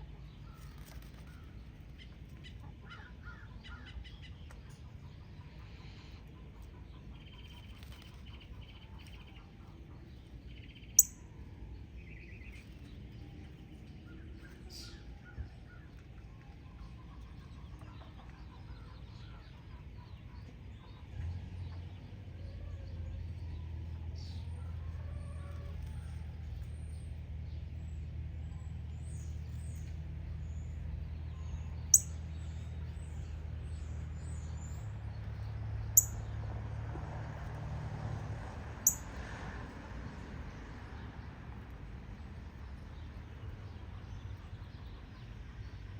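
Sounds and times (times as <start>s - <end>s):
birds chirping: 0.2s - 16.0s, 26.6s - 36.4s, 38.8s - 39.1s.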